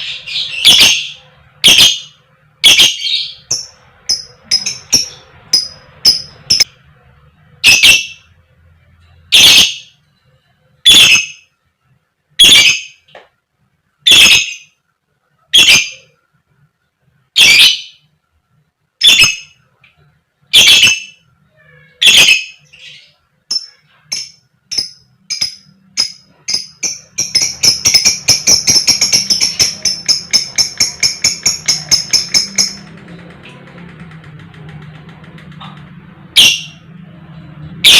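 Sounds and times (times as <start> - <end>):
lovebird rapid chatter: 23.5 - 35.6.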